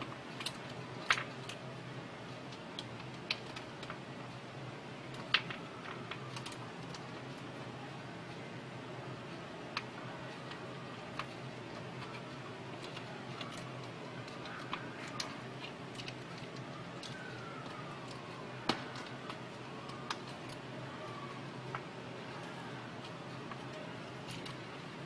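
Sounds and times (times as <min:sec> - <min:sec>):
plastic parts clicking: 0:12.0 - 0:20.6.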